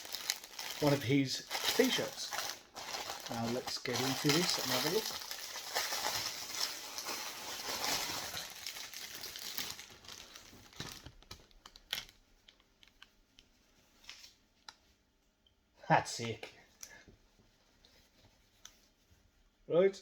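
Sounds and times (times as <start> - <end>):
plastic wrapping crinkling: 0.0 - 14.4.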